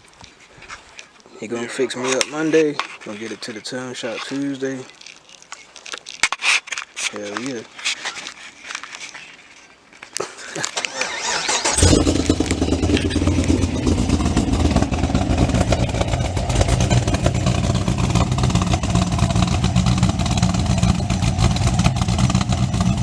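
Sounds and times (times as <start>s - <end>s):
car engine deep idle: 11.7s - 23.0s.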